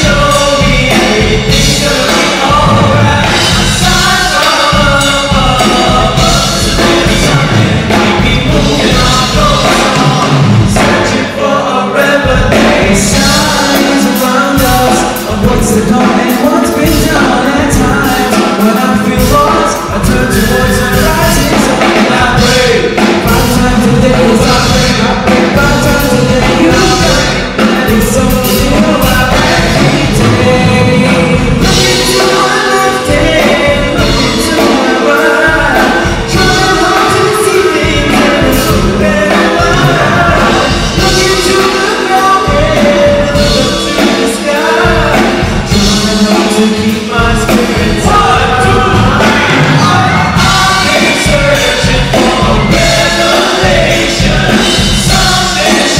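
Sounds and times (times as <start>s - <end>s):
instrumental backing: 0.0s - 55.9s
person singing: 0.0s - 55.9s.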